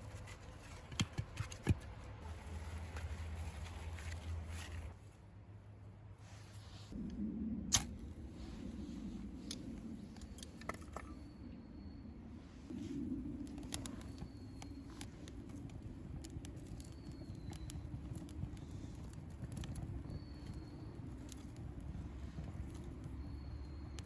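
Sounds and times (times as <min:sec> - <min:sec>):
low steady rumble: 0:01.8 - 0:24.0
campfire crackling and popping: 0:13.2 - 0:24.0.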